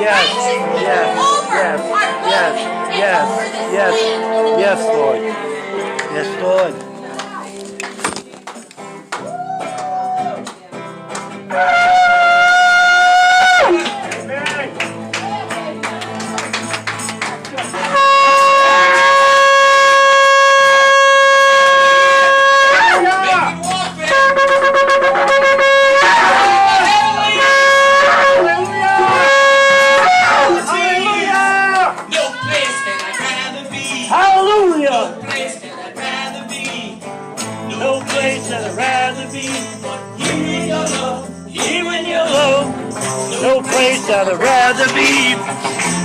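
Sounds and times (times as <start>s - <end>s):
person singing: 0.0s - 7.2s, 24.1s - 37.0s, 37.6s - 46.0s
keyboard chords: 0.0s - 8.4s, 14.2s - 32.2s
shofar blasts: 11.5s - 13.9s, 17.8s - 23.4s, 24.0s - 30.7s
jingling percussion: 30.6s - 46.0s.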